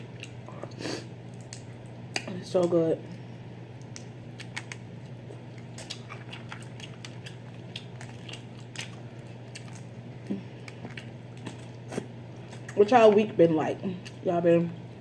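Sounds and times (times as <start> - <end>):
steady low hum: 0.0 - 15.0
wet mouth smacks while eating: 1.3 - 2.3, 3.8 - 4.9, 5.7 - 9.9.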